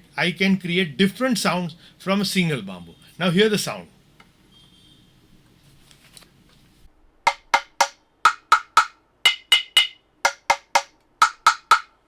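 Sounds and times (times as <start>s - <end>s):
bamboo woodblock knocks: 7.3s - 12.0s.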